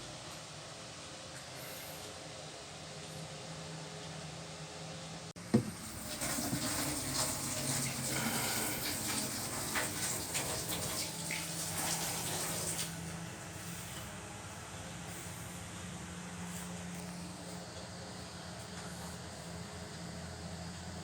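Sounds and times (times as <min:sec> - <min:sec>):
water splashing in washing machine: 0:05.4 - 0:13.3.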